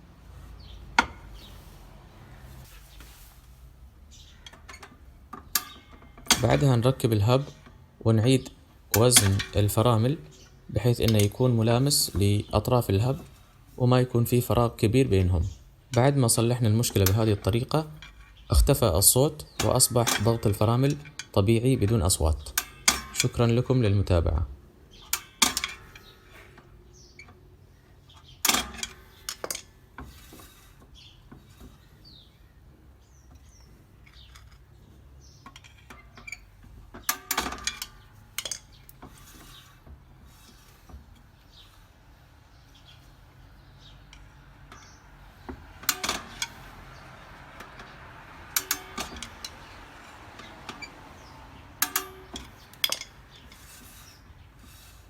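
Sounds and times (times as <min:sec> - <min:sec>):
low steady background noise: 0:00.0 - 0:55.0
metallic clinks and knocks: 0:04.4 - 0:07.8, 0:08.9 - 0:11.4, 0:19.5 - 0:23.6, 0:24.9 - 0:27.4, 0:28.1 - 0:31.8, 0:33.3 - 0:41.6, 0:43.8 - 0:53.8.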